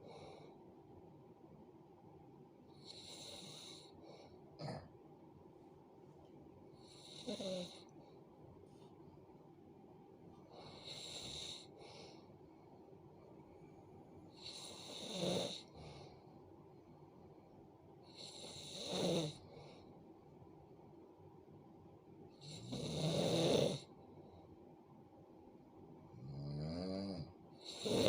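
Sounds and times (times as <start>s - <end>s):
person snoring: 2.8s - 4.0s, 6.8s - 7.9s, 14.4s - 15.8s, 18.2s - 19.4s, 22.4s - 23.9s, 26.2s - 28.0s.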